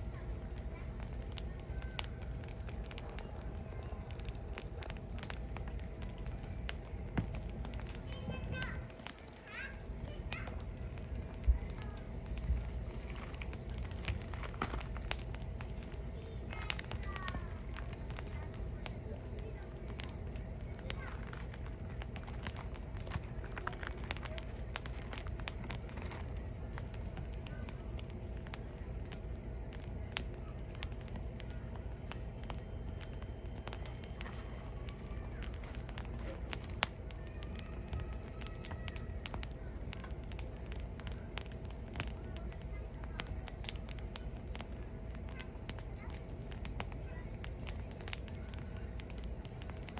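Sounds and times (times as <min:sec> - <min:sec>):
firewood crackling and popping: 0:00.0 - 0:49.9
low fire rumble: 0:00.0 - 0:49.9.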